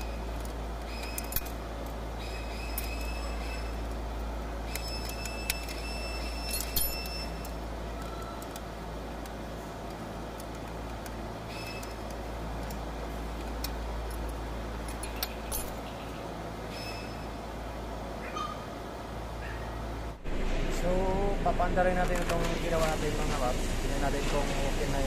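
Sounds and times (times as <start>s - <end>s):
steady low hum: 0.0s - 25.0s
metallic clicks of hand tools: 13.4s - 15.8s.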